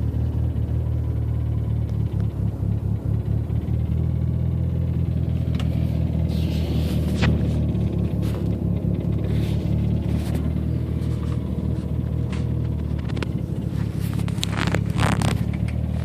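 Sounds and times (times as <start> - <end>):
car engine idling: 0.0 - 16.0
brief rustle: 9.3 - 15.8.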